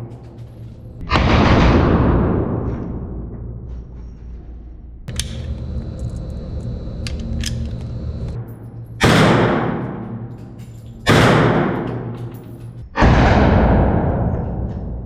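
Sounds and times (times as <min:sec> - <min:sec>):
rifle shots echoing: 0:09.0 - 0:10.2, 0:11.1 - 0:12.3.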